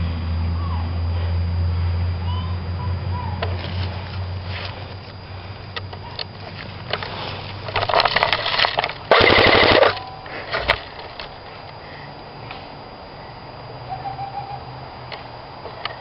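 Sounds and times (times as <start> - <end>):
airsoft guns firing: 8.0 - 10.0.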